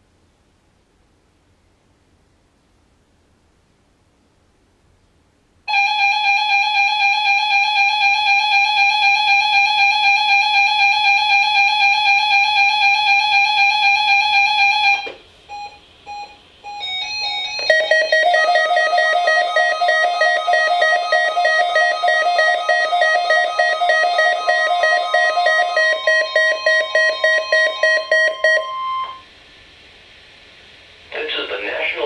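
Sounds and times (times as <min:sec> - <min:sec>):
weather radio alert buzzer: 0:05.7 - 0:29.2
short beeps: 0:14.9 - 0:29.2
multi-pitch tone pattern: 0:16.7 - 0:29.2.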